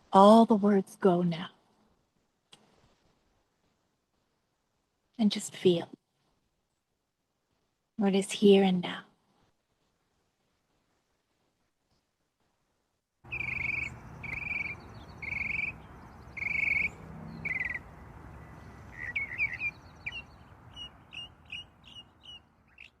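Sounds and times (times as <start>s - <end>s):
short bird chirps: 13.3s - 17.8s, 18.5s - 23.0s
buzzy bird calls: 13.3s - 23.0s.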